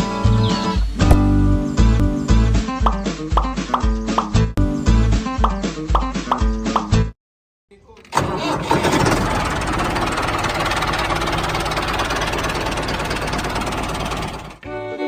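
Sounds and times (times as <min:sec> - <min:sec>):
engine starting and running: 0:07.9 - 0:14.6.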